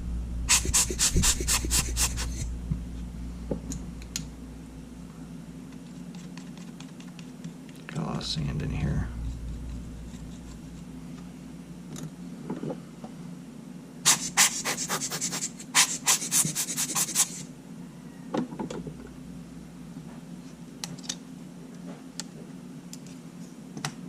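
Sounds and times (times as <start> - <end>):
small brush scrubbing: 0.5 - 2.5, 9.3 - 10.9, 14.1 - 17.4.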